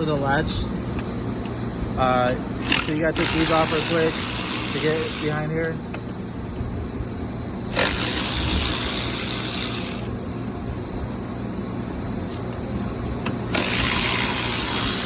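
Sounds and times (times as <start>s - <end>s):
ratchet wrench clicking: 2.6s - 5.5s, 7.7s - 10.1s, 13.2s - 15.0s.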